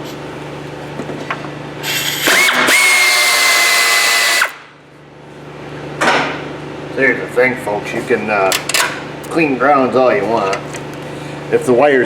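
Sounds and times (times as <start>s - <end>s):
power tool whining: 1.8s - 4.6s.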